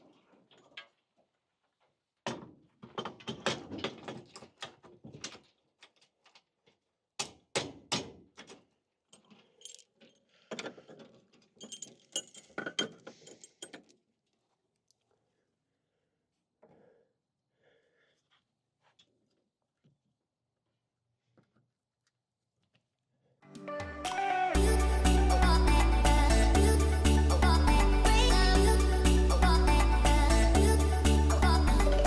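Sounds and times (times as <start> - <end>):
hard objects knocking and rattling: 2.3 - 5.6, 9.2 - 13.9.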